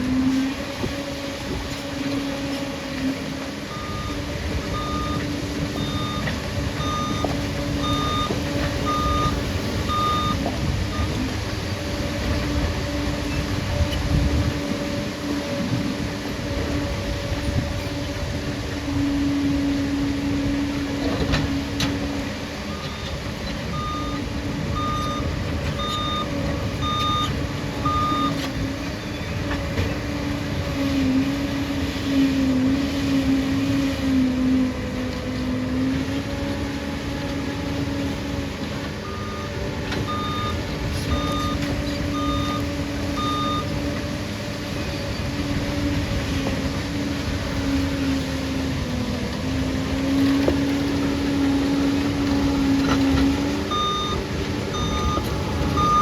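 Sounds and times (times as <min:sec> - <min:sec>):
bulldozer diesel engine running: 0:00.0 - 0:56.0
reverse alarm beeps: 0:03.7 - 0:11.2, 0:22.7 - 0:28.5, 0:40.1 - 0:43.9, 0:53.7 - 0:56.0.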